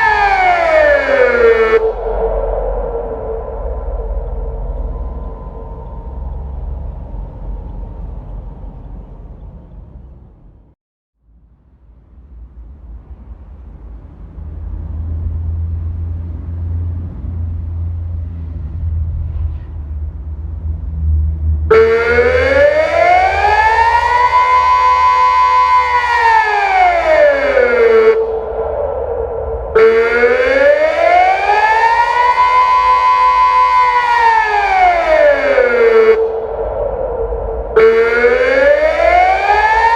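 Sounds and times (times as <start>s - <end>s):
wailing civil defence siren: 0.0s - 9.2s, 21.1s - 39.9s
low rumble: 0.0s - 34.0s, 34.6s - 39.9s.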